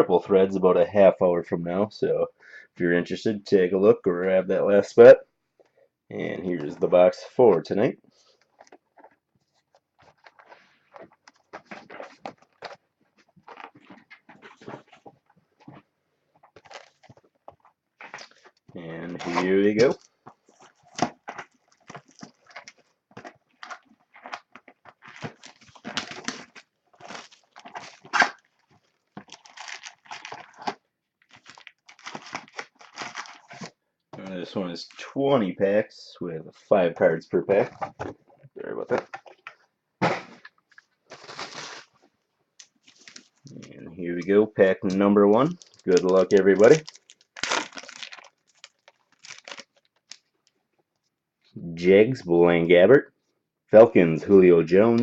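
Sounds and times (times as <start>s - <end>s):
cards crinkling and rustling: 8.2s - 15.8s, 16.4s - 33.8s, 40.4s - 50.6s.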